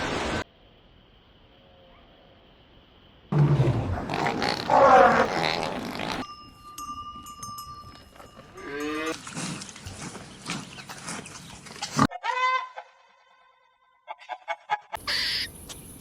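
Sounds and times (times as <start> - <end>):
rough animal call with grunting: 3.5 - 6.2.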